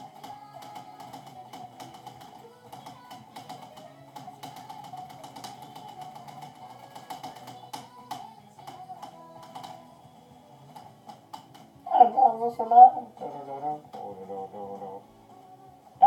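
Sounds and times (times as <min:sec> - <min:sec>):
mechanical keyboard typing: 0:00.0 - 0:10.0
background music: 0:00.0 - 0:16.0.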